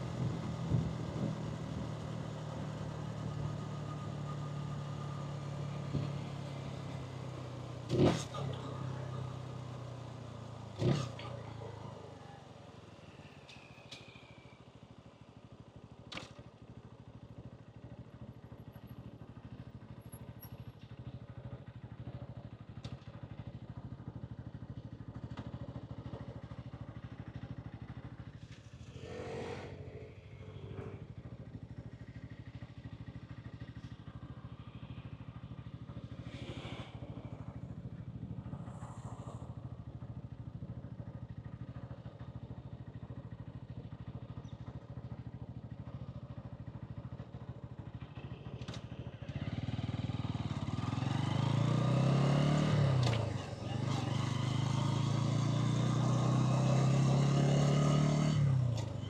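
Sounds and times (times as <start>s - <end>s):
vehicles passing: 0.0s - 14.0s, 27.6s - 41.6s, 48.2s - 59.0s
motorcycle engine and exhaust: 0.0s - 59.0s.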